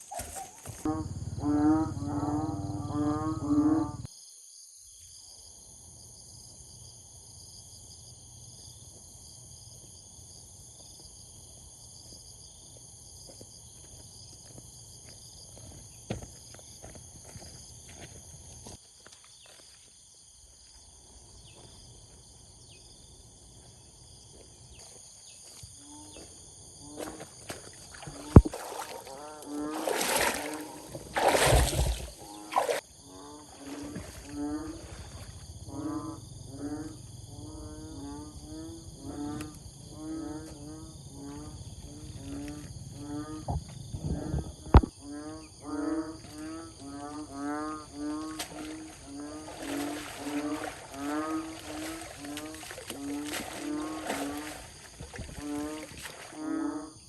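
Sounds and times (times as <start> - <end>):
short animal calls: 0.0 - 4.0.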